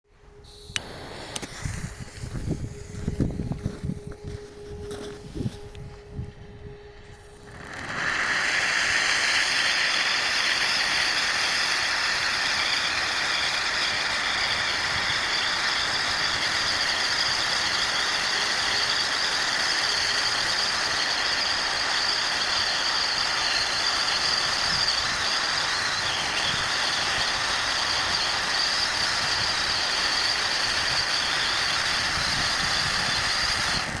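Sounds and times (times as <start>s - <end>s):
hiss of spraying sparks: 0.8s - 2.4s, 7.4s - 34.0s.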